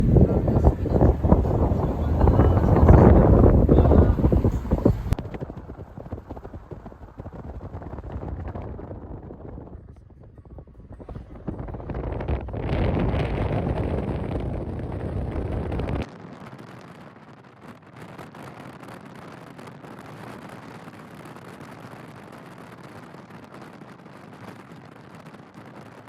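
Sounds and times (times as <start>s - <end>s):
air rushing against microphone: 0.0s - 16.1s
faint steady rushing noise: 0.0s - 26.0s.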